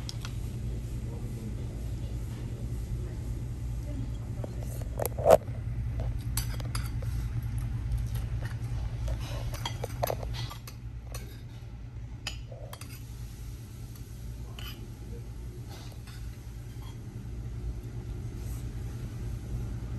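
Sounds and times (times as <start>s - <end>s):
steady low hum: 0.0s - 19.9s
cutlery and dishes clinking: 6.4s - 7.1s, 9.5s - 11.6s, 14.5s - 14.8s.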